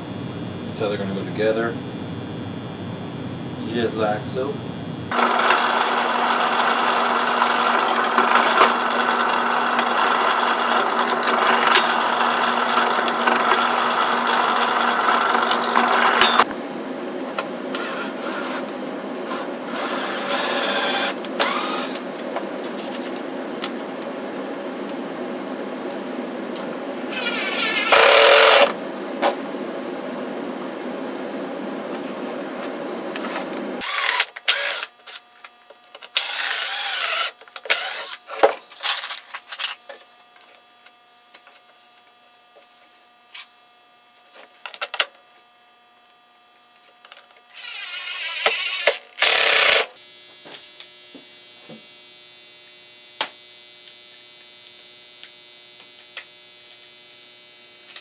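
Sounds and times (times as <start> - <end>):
electric power tool motor hum: 5.1 - 16.6, 17.6 - 22.1, 27.0 - 28.9, 33.1 - 39.8, 47.4 - 50.0
workshop handling noises: 17.7 - 23.8.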